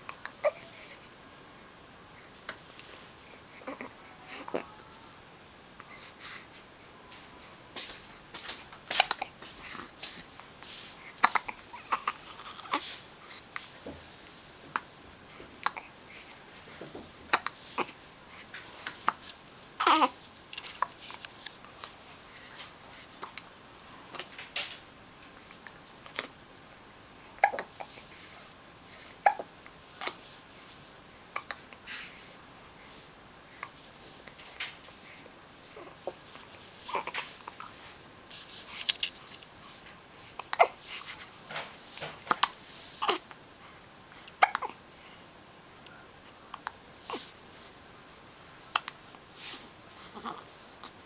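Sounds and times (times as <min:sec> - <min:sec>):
baby hiccuping: 0:27.4 - 0:27.8, 0:29.2 - 0:29.5, 0:44.4 - 0:44.8.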